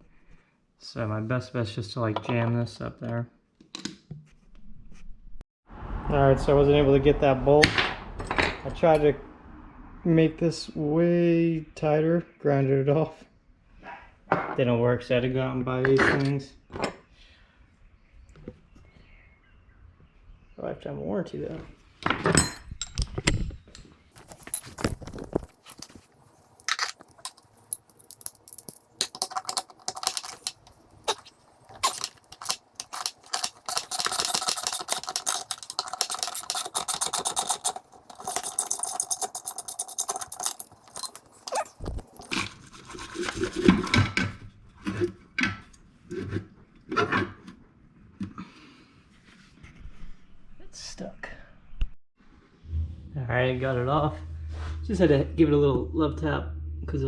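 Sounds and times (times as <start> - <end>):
metal tools clinking and scraping: 24.2 - 42.4.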